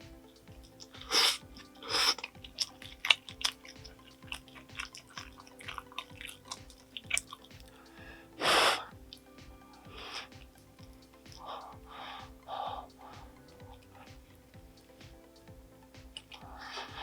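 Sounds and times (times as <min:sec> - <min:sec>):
wet mouth clicks while chewing: 0:02.0 - 0:07.7.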